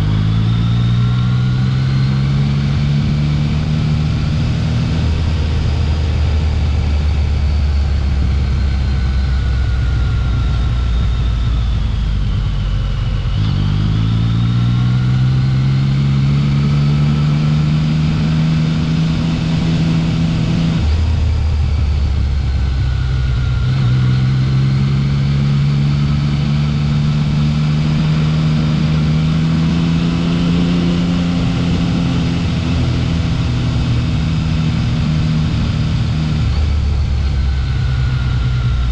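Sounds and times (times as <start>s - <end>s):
motorcycle engine revving: 0.0s - 38.9s.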